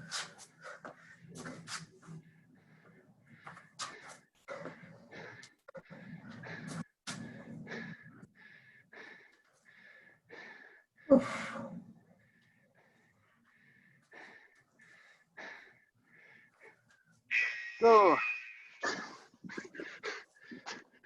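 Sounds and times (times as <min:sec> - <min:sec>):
person panting and gasping: 0:02.6 - 0:16.8, 0:19.4 - 0:21.0.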